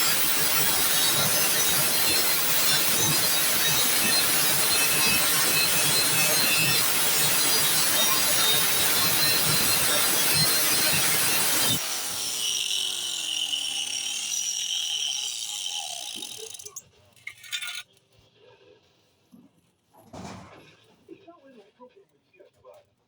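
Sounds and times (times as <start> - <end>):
grinder motor winding down: 0.0 - 16.8
angle grinder grinding metal: 0.0 - 17.8.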